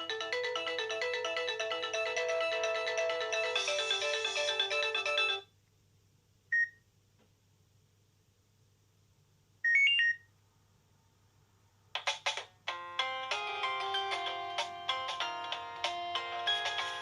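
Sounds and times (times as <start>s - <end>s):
phone ringtone melody: 0.0s - 5.4s, 12.7s - 17.0s.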